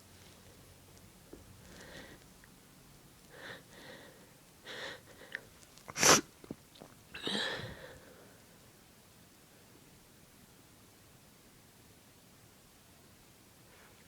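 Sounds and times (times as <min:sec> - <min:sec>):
catching breaths: 0:01.6 - 0:02.3, 0:03.3 - 0:05.5
person sneezing: 0:05.9 - 0:06.3, 0:07.2 - 0:07.8.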